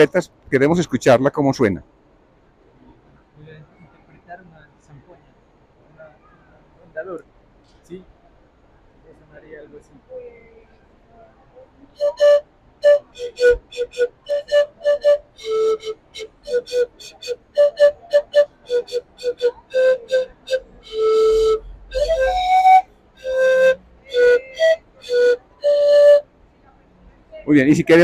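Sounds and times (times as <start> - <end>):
panpipe playing: 12.0 - 26.2.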